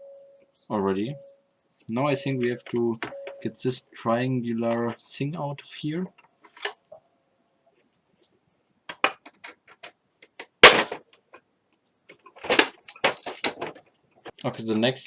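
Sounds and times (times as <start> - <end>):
plastic clicks and knocks: 8.9 - 11.4
loud sharp plastic snap: 10.4 - 11.2.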